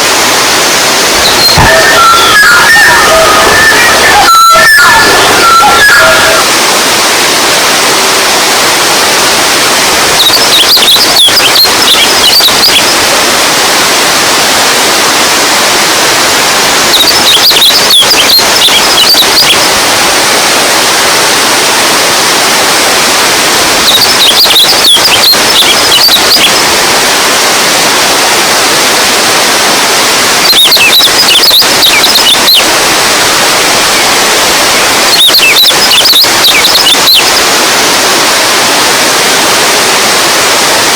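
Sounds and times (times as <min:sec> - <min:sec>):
rushing stream: 0:00.0 - 0:40.9
high chirps: 0:01.2 - 0:06.5.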